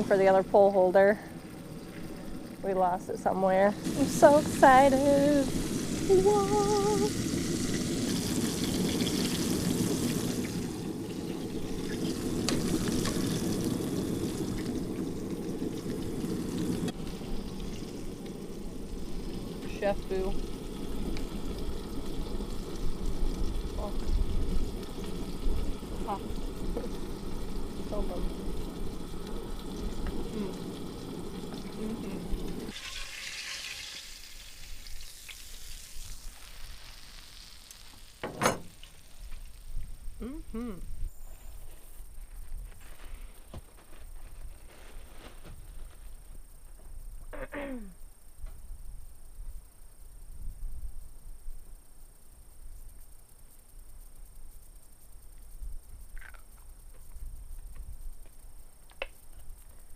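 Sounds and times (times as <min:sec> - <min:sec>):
fish sizzling in hot oil: 0:00.0 - 0:40.2
oil popping: 0:03.8 - 0:39.6, 0:56.2 - 0:56.5.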